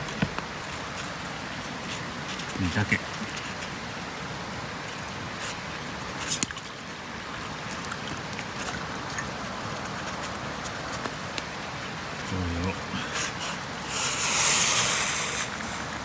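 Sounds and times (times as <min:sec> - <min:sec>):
wood fire crackling: 0:00.0 - 0:16.0
fire popping and snapping: 0:04.8 - 0:16.0.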